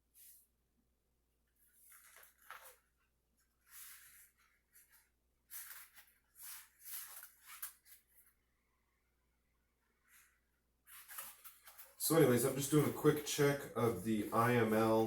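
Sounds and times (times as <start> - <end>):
rubbing of rubber bicycle tire: 1.7 - 8.2.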